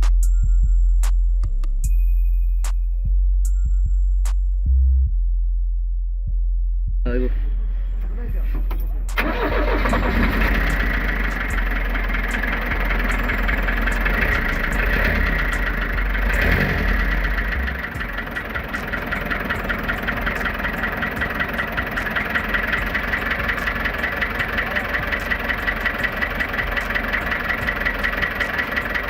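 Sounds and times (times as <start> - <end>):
diesel engine idling: 7.1 - 29.0.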